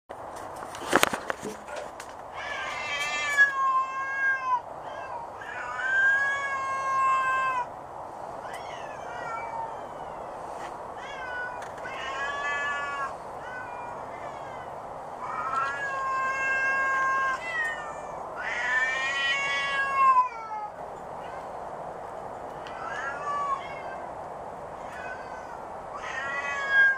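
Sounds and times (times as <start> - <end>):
steady background hum: 0.1 - 26.9
cat yowling: 2.3 - 7.7, 8.4 - 10.4, 11.0 - 21.5, 22.7 - 24.2, 24.8 - 26.9.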